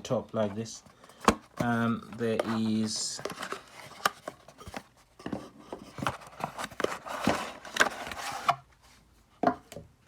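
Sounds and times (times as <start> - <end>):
cardboard box taps and scrapes: 1.2 - 8.6.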